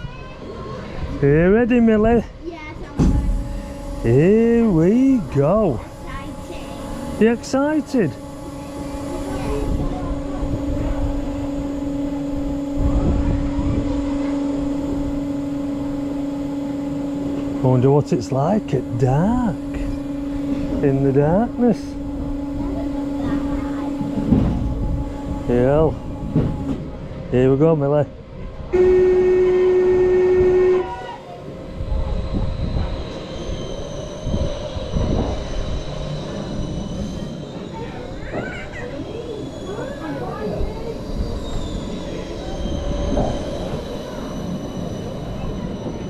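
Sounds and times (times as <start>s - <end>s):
amusement ride machinery hum: 0.0s - 46.0s
wind on microphone: 8.4s - 15.5s, 21.9s - 27.1s, 31.7s - 36.8s
ride start horn: 28.7s - 31.2s.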